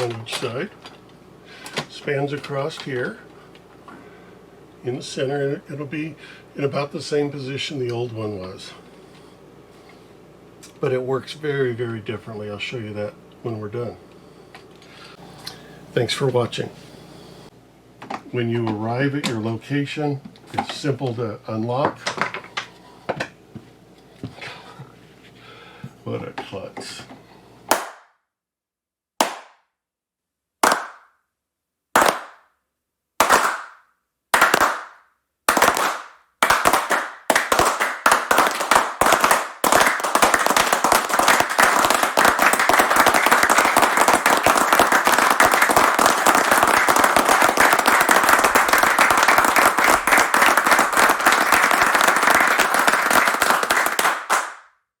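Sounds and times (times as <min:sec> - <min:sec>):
hand claps building into applause: 0:00.0 - 0:00.4, 0:27.7 - 0:28.1, 0:29.2 - 0:29.5, 0:30.6 - 0:31.1, 0:32.0 - 0:32.4, 0:33.2 - 0:54.7.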